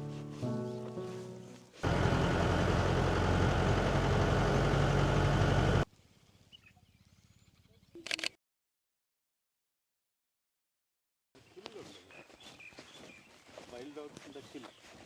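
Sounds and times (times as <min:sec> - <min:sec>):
road and wind noise: 0:01.8 - 0:05.8
vehicle engine rumbling: 0:01.8 - 0:05.8.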